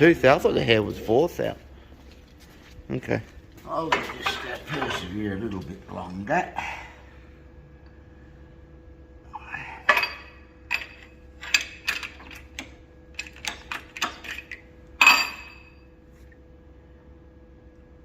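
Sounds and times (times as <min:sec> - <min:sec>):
faint machine hum: 0:00.0 - 0:18.0
metal-on-metal clinks and knocks: 0:09.9 - 0:15.9.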